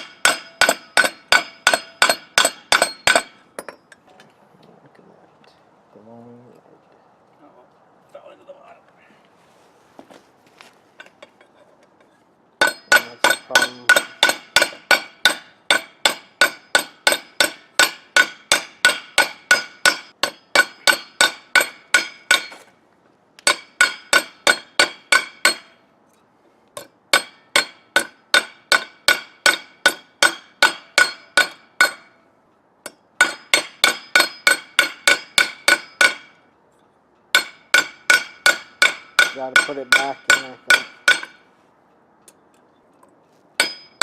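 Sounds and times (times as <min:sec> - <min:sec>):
hammer striking hot metal: 0:00.0 - 0:03.8, 0:12.6 - 0:22.7, 0:23.4 - 0:25.8, 0:26.8 - 0:32.2, 0:32.8 - 0:36.4, 0:37.4 - 0:41.5, 0:43.6 - 0:44.0.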